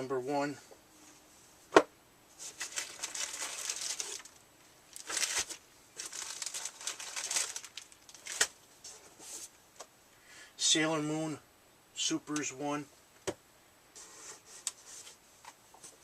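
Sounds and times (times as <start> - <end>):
packaging crinkling: 2.4 - 8.6.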